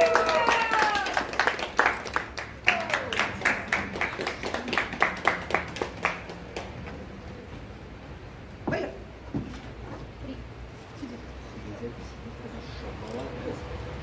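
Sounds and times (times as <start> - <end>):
small group applauding: 0.0 - 7.1.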